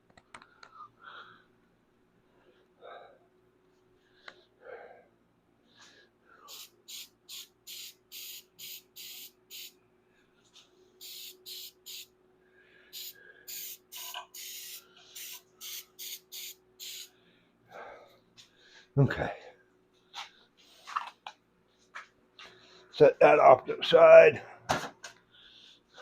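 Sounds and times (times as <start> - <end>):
aerosol spray can hissing: 6.5 - 9.8, 11.0 - 12.1, 13.0 - 17.1.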